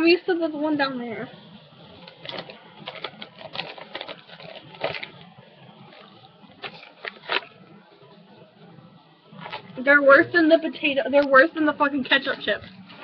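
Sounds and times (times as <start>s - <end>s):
chips crunching: 2.0s - 5.2s, 6.0s - 7.6s
chip packaging crinkling: 2.0s - 7.6s.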